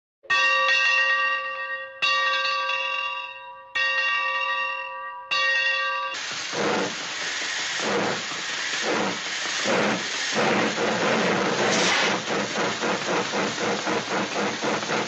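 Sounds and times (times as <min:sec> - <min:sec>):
loud hiss: 0:06.2 - 0:15.0.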